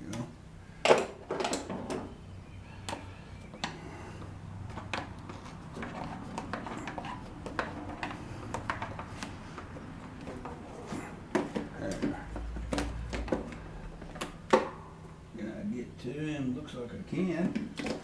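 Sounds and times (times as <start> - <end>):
clicks and taps of handling parts: 4.7 - 10.6.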